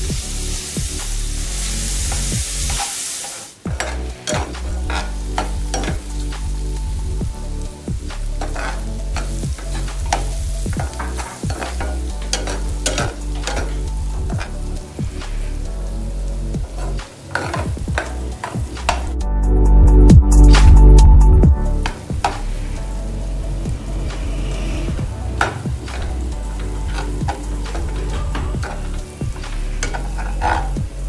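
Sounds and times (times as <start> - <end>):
food sizzling in a pan: 0.0 - 31.0
spoon clinking and scraping pan: 2.1 - 6.4, 8.4 - 14.6, 16.6 - 19.1, 25.3 - 31.0.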